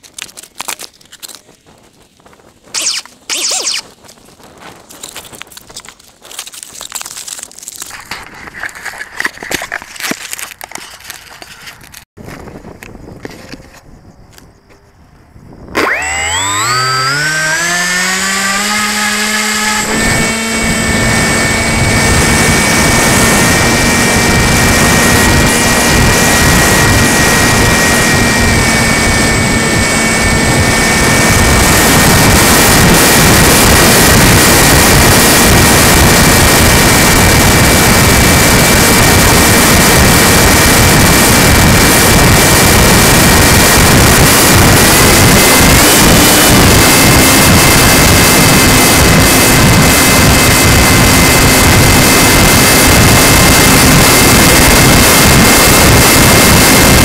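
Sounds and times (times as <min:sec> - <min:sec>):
electric motor and propeller whine: 0:02.8 - 0:03.9, 0:15.7 - 0:57.0.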